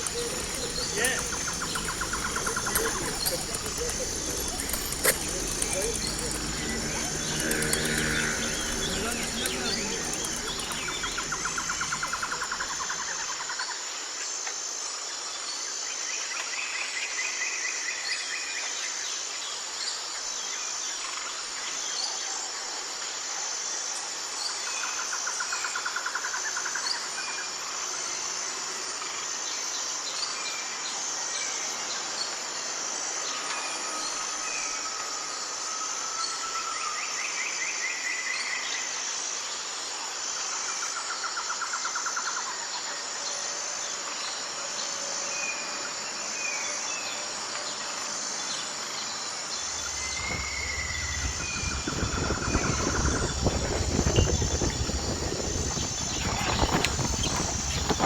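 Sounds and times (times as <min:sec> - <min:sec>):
birds singing trills: 0:00.0 - 0:13.5, 0:48.4 - 0:58.0
insects trilling: 0:00.0 - 0:16.7, 0:20.6 - 0:58.0.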